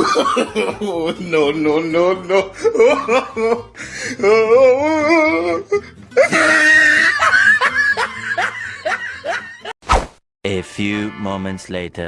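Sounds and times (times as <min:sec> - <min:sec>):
shrill cartoon laugh: 0:06.2 - 0:09.7.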